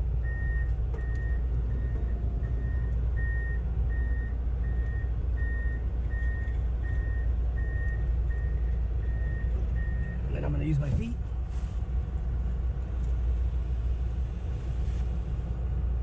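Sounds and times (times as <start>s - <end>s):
diesel engine drone: 0.0s - 16.0s
travel alarm beeping: 0.2s - 10.2s.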